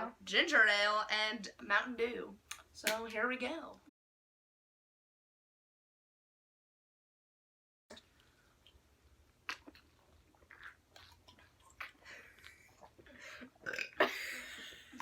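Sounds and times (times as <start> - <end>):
person gulping soda: 7.9 - 15.0.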